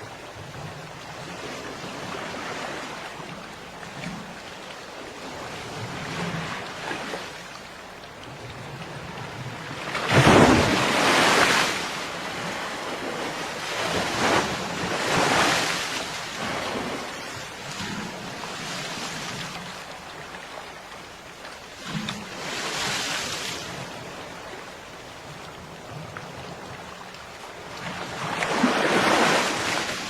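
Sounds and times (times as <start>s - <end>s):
sea waves washing onto beach: 0.0s - 30.0s
big wave breaking: 10.0s - 17.1s.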